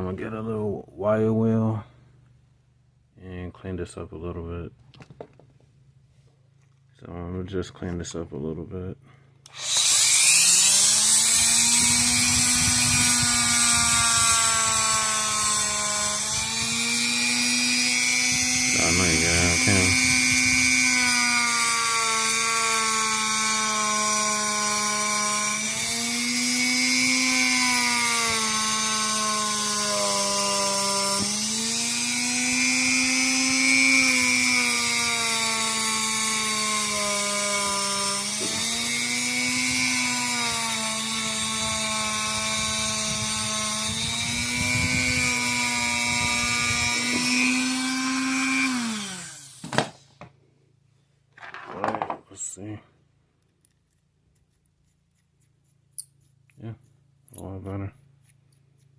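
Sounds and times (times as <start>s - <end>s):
rotary tool wire wheel whine: 9.5s - 49.8s.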